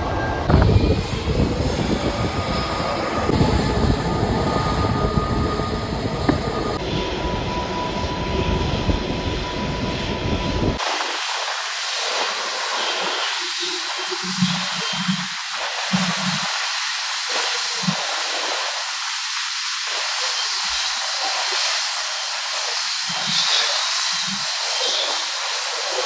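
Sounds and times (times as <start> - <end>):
jet engine rumble: 0.0 - 11.3.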